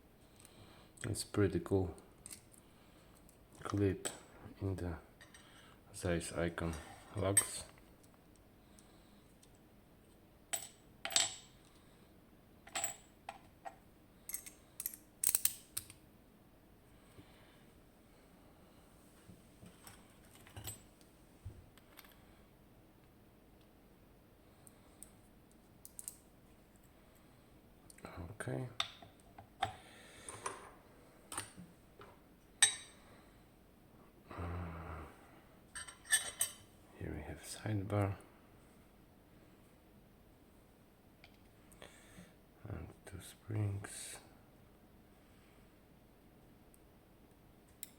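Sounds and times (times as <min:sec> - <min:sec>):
small metal parts clinking: 0:14.3 - 0:15.9, 0:25.8 - 0:26.2.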